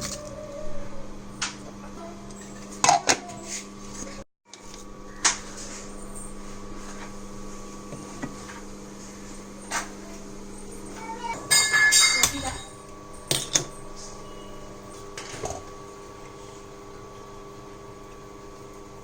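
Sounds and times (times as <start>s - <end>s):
cookware and utensils clinking: 11.2s - 13.7s.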